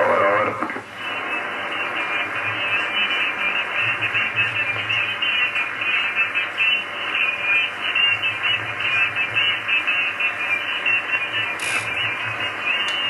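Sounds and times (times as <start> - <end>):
radio band hiss: 0.0 - 13.0
warbling weak radio signals: 0.0 - 13.0.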